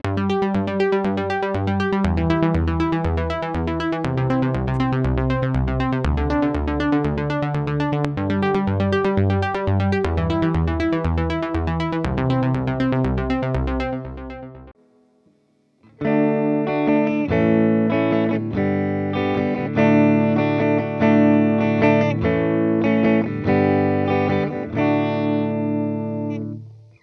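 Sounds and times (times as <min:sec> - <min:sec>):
electronic music with beat: 0:16.0 - 0:26.6.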